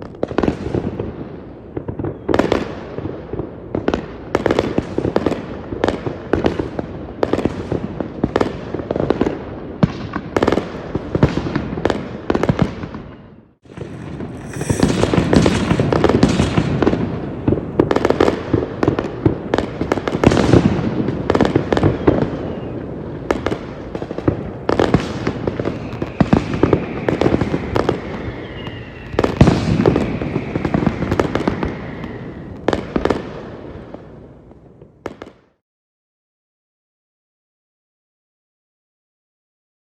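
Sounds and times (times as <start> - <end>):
fireworks bangs and crackling: 0.0 - 35.6
faint high whistle: 14.0 - 16.3, 25.7 - 30.7.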